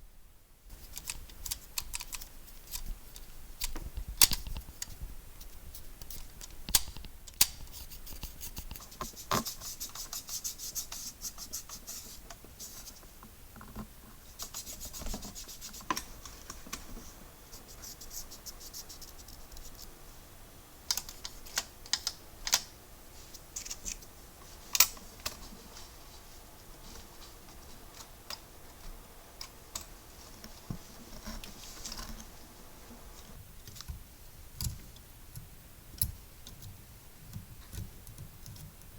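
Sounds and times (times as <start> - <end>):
scratchy brushing: 7.6 - 13.0, 14.2 - 19.9.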